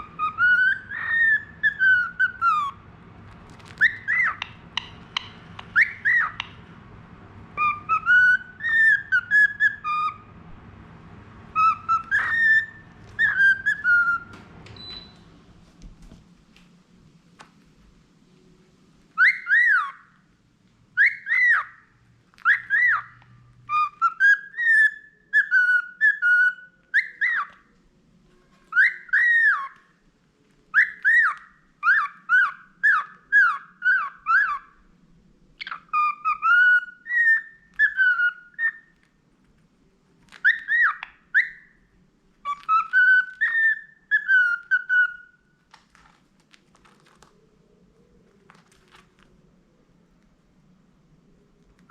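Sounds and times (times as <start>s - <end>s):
budgerigar whistling a tune: 0.0s - 2.8s, 3.8s - 6.6s, 7.6s - 10.3s, 11.5s - 15.2s, 19.2s - 20.1s, 21.0s - 27.6s, 28.7s - 29.8s, 30.7s - 34.8s, 35.6s - 39.0s, 40.3s - 41.8s, 42.4s - 45.5s.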